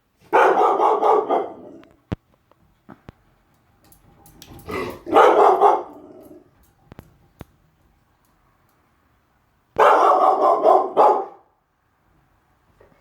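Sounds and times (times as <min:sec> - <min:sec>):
dog barking: 0:00.3 - 0:01.8, 0:05.0 - 0:06.1, 0:09.8 - 0:11.5.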